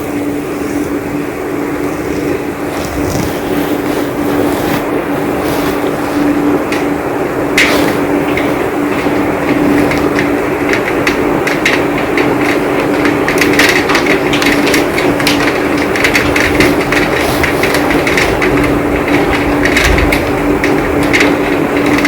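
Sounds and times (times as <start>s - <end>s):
heavy rain: 0.0s - 22.0s.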